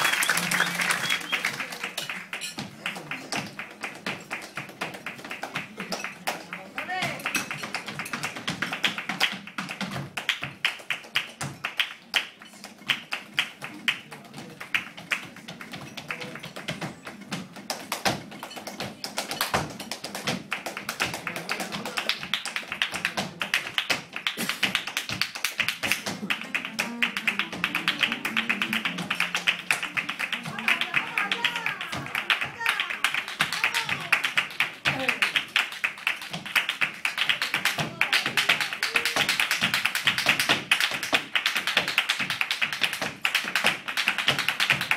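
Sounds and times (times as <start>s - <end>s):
flamenco music: 0.0s - 44.9s.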